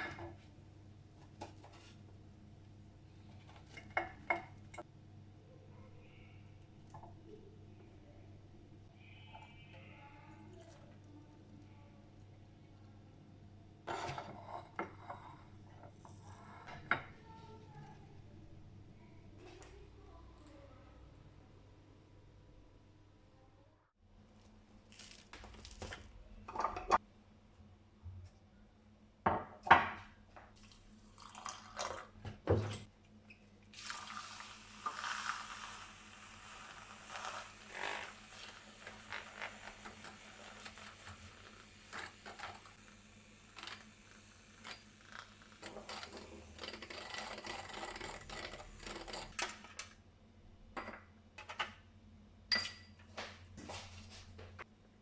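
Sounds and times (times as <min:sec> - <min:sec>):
dishes clinking and knocking: 0:13.9 - 0:17.2, 0:26.5 - 0:27.0, 0:29.3 - 0:30.1.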